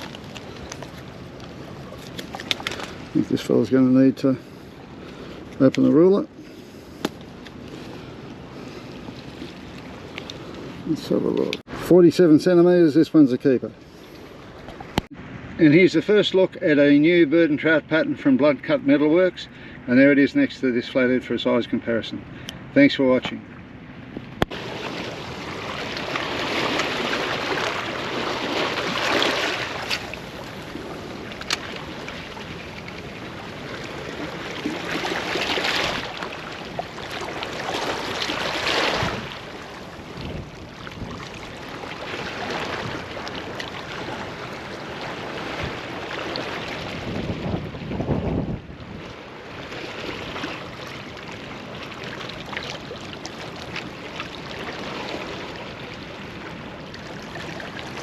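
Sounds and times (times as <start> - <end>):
wind gusts: 0.0 - 58.0
wind buffeting microphone: 37.8 - 41.6, 42.2 - 49.4.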